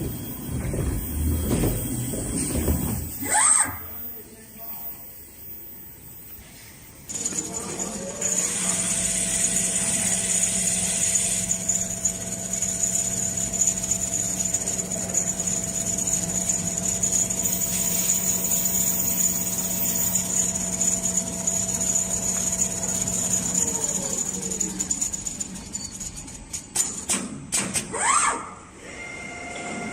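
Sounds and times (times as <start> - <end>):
sewing machine motor hum and whine: 0.0 - 3.3, 7.0 - 26.5.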